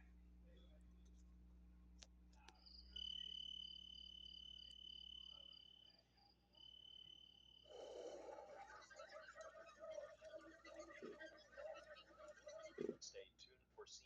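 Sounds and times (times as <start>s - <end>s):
cricket trilling: 2.4s - 13.0s.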